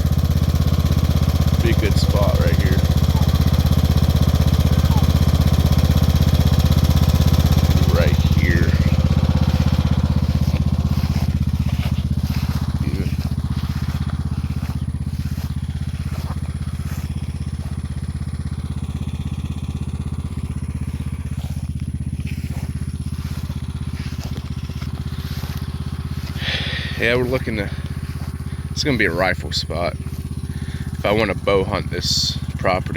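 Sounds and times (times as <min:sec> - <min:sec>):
engine running steadily: 0:00.0 - 0:32.9.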